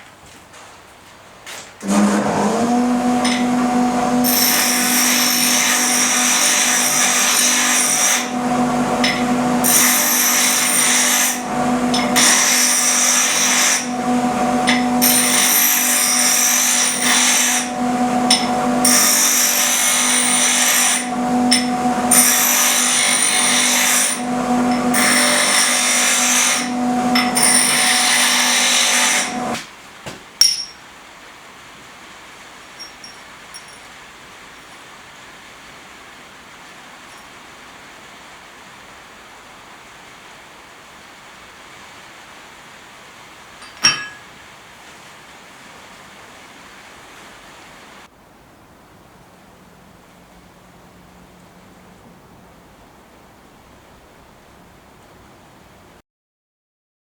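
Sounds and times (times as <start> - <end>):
electric grinder grinding steel: 1.8 - 29.6.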